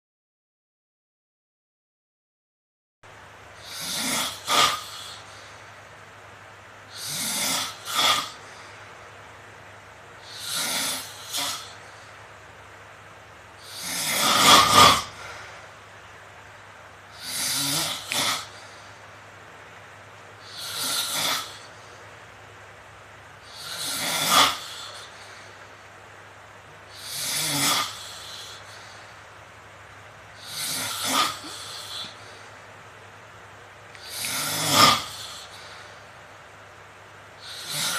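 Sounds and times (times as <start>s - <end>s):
man snoring loudly: 3.6s - 5.6s, 6.9s - 8.7s, 10.2s - 12.0s, 13.6s - 15.5s, 17.1s - 18.9s, 20.4s - 21.9s, 23.4s - 25.5s, 26.9s - 29.1s, 30.4s - 32.5s, 34.0s - 36.0s, 37.4s - 37.9s.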